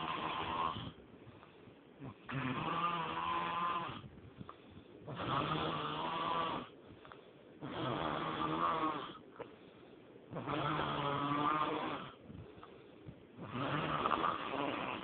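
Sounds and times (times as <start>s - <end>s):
person snoring: 0.0s - 1.0s, 2.0s - 4.1s, 5.1s - 6.8s, 7.6s - 9.2s, 10.3s - 12.2s, 13.4s - 15.0s
quiet breathing: 0.0s - 5.4s, 6.2s - 8.1s, 8.9s - 10.5s, 11.4s - 15.0s.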